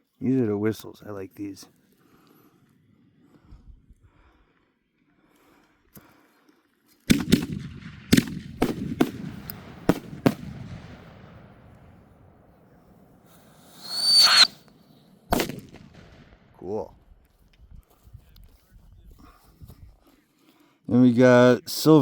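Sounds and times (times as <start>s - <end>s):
high firework whistle: 13.4s - 14.7s.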